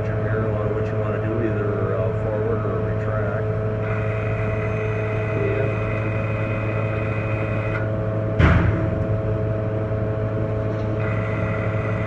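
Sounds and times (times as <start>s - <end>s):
high steady whine: 0.0s - 12.0s
welding power source humming: 0.0s - 12.0s
loud clunk: 8.4s - 9.4s.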